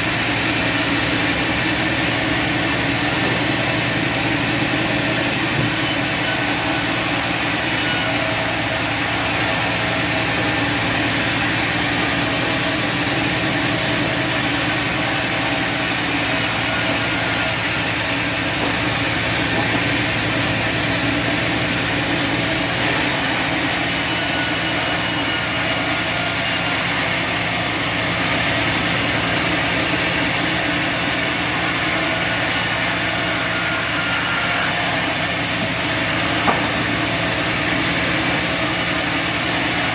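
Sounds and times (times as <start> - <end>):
band blade sawing wood: 0.0 - 39.9.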